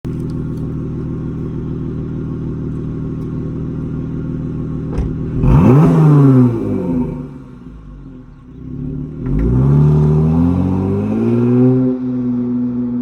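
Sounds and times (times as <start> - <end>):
car exhaust idling: 0.0 - 9.4.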